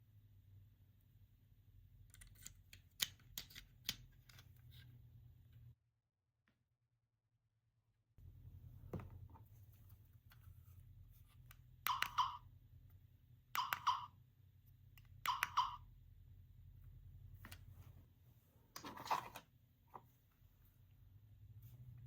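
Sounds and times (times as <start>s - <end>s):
toy clicking bursts: 11.9s - 12.4s, 13.6s - 14.1s, 15.2s - 15.8s.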